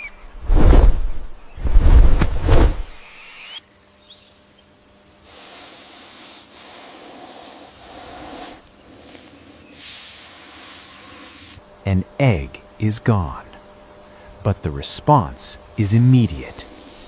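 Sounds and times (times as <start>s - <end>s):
snake hissing: 5.2s - 11.6s, 15.8s - 17.0s.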